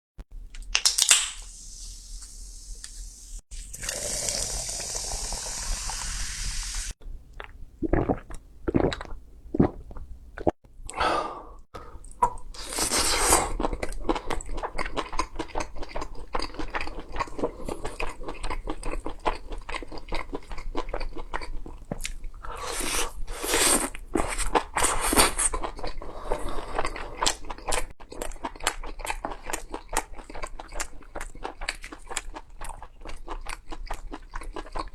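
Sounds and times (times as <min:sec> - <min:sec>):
steady hiss: 0:01.2 - 0:03.4, 0:04.0 - 0:07.0
crunchy food chewing: 0:12.1 - 0:34.9.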